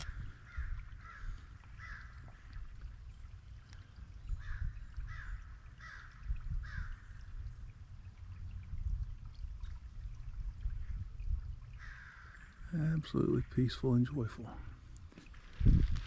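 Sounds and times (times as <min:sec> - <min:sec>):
crow cawing: 0:00.0 - 0:02.2, 0:04.4 - 0:07.1, 0:11.8 - 0:12.5.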